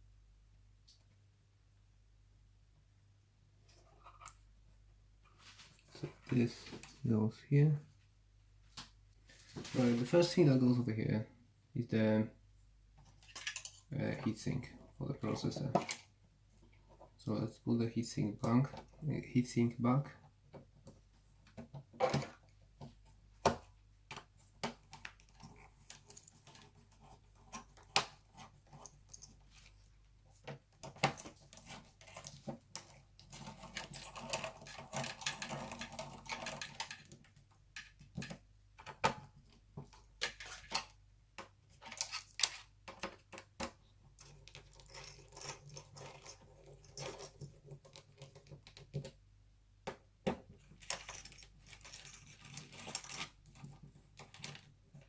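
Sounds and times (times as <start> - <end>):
scraping and rustling: 9.2 - 10.3, 24.4 - 38.4, 50.6 - 55.0.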